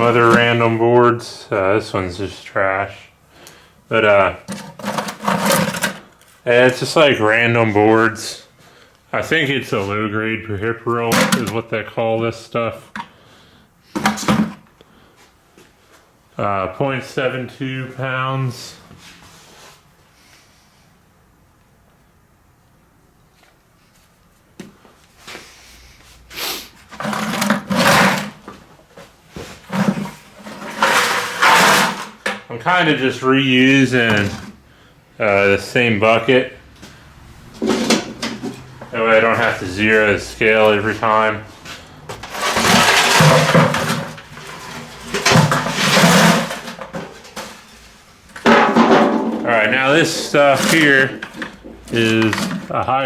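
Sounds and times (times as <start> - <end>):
circuit boards clattering in a bucket: 4.4 - 6.1, 11.1 - 11.6, 14.0 - 14.6, 26.9 - 28.4, 29.5 - 32.4, 37.6 - 38.7, 42.2 - 47.7, 48.4 - 49.4, 50.0 - 52.7.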